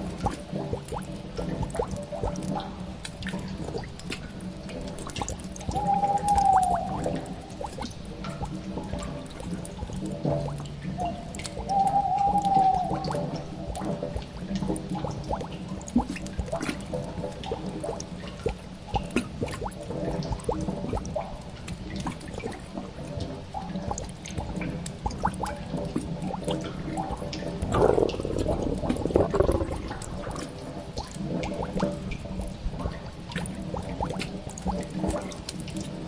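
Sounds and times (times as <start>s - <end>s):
water dripping: 0.0s - 36.0s.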